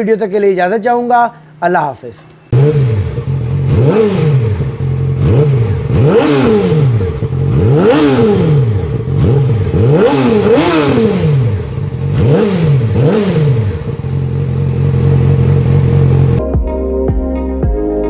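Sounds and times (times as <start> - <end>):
motorcycle engine idling: 2.5 - 16.4
motorcycle engine revving: 2.5 - 16.4.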